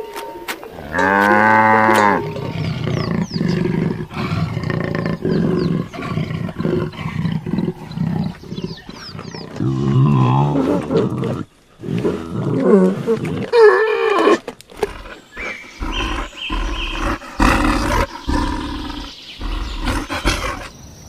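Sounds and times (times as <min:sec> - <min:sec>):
cow mooing: 0:00.8 - 0:07.1
lion grunting calls: 0:00.8 - 0:20.7.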